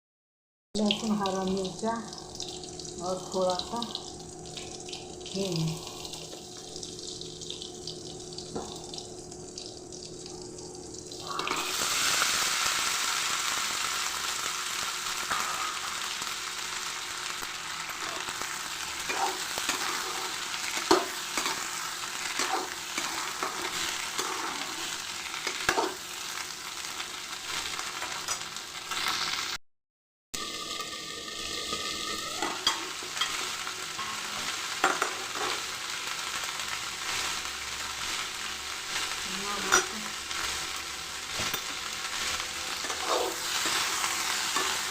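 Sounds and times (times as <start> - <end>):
food sizzling in hot oil: 0.8 - 29.6, 30.4 - 44.9
spoon scraping a pan: 19.0 - 26.0, 31.7 - 35.7, 41.3 - 44.9.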